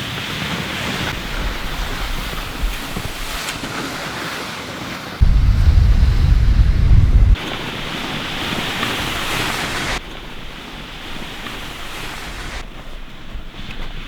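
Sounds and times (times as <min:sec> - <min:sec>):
blizzard wind gusts on microphone: 0:01.0 - 0:04.0, 0:05.2 - 0:13.3.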